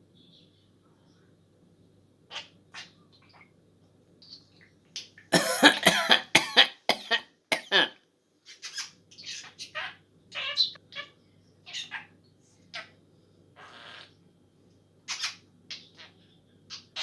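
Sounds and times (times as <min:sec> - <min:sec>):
budgerigar chirps and chatter: 0:02.3 - 0:03.6, 0:08.4 - 0:13.0, 0:13.6 - 0:14.2, 0:15.1 - 0:17.0
budgerigar cough-like sounds: 0:05.3 - 0:08.0.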